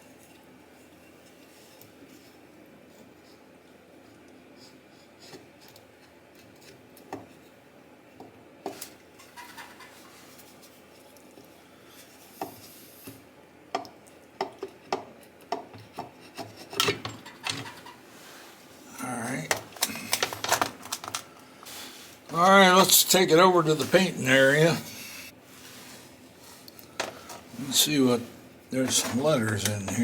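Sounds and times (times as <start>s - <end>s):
metal cover scraping: 9.2s - 10.3s.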